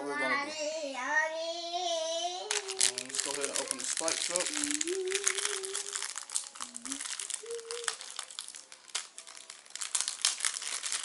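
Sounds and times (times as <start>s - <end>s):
packaging crinkling and tearing: 2.5s - 11.0s.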